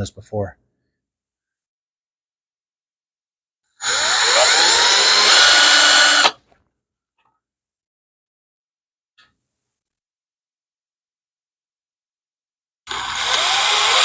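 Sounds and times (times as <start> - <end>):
electric drill whining: 3.8 - 6.4, 12.9 - 14.0.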